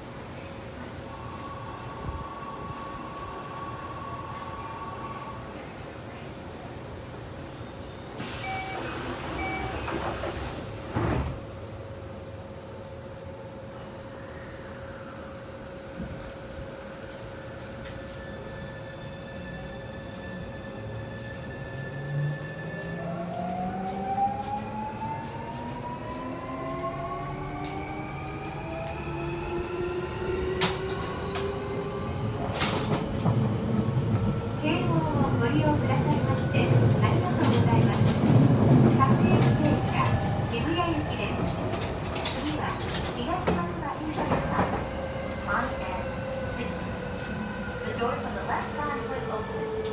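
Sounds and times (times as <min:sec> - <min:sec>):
train hum: 0:00.0 - 0:49.9
sliding doors shutting: 0:08.2 - 0:11.5, 0:28.8 - 0:34.3
door chime beeps: 0:08.3 - 0:10.0.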